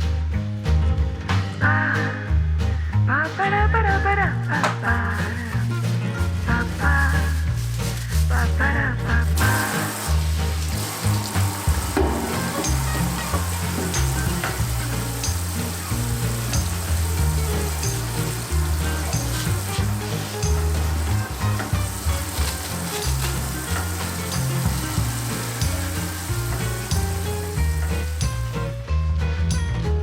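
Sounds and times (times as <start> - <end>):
background music with bass line: 0.0 - 30.0
crackling hiss with clicks: 9.4 - 28.6.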